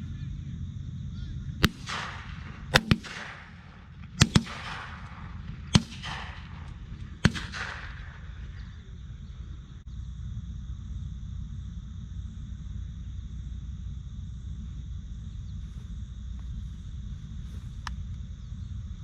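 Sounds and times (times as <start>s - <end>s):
shotgun shots with echo: 1.6s - 8.7s.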